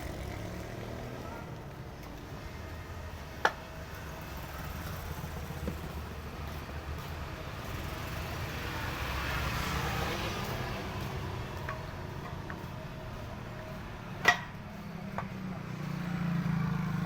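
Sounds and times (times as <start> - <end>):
motor vehicle passing by: 0.0 - 17.0.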